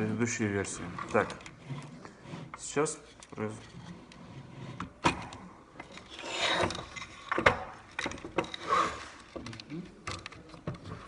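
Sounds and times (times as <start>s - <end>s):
plastic parts rubbing and scraping: 0.0s - 5.2s, 5.8s - 11.0s.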